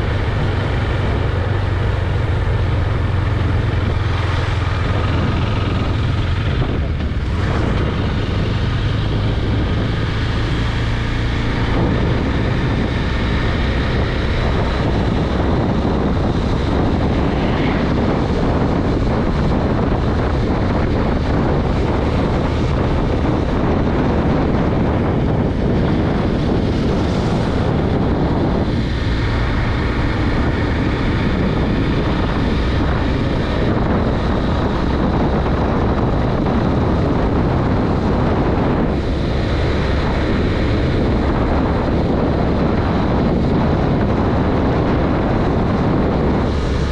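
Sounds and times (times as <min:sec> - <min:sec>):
motorcycle engine running: 0:00.0 - 0:46.9
wind buffeting microphone: 0:00.0 - 0:46.9.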